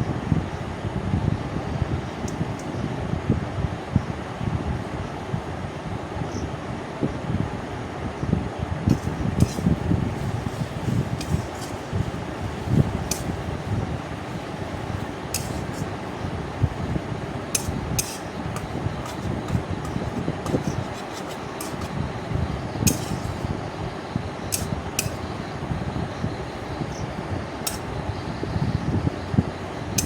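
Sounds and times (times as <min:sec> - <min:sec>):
metal spatula scraping pan: 0:08.9 - 0:13.6, 0:14.6 - 0:22.0, 0:22.9 - 0:23.5, 0:24.5 - 0:25.3, 0:27.7 - 0:27.9
paste sizzling in oil: 0:08.9 - 0:23.6, 0:24.5 - 0:25.4, 0:27.7 - 0:27.9.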